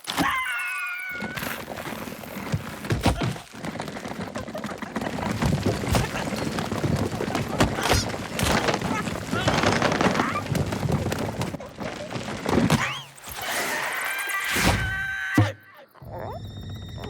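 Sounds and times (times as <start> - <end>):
cartoon sound effects: 12.8 - 16.6
high-pitched wavering cry: 12.9 - 17.0.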